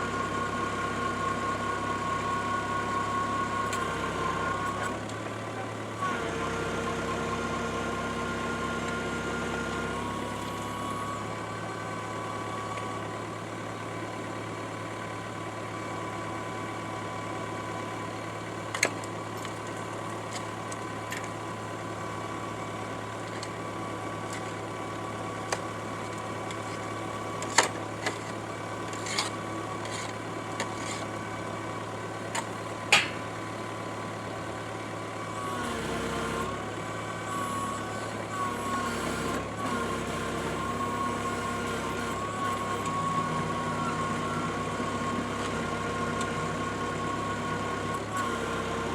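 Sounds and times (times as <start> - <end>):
drilling machine engine running: 15.6 - 48.9.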